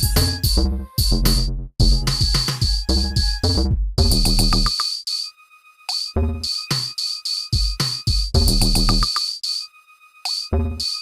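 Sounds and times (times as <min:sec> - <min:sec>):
electronic music with synth stabs: 0:00.0 - 0:11.0.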